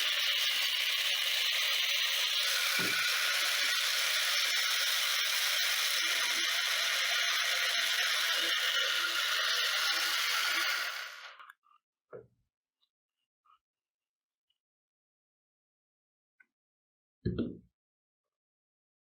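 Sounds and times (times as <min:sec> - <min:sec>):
plastic gears whirring: 0:00.0 - 0:11.6.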